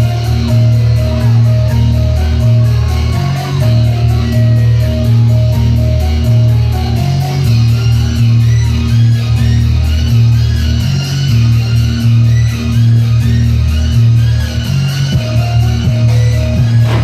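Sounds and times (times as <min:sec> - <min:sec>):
rock guitar and bass riff: 0:00.0 - 0:17.0.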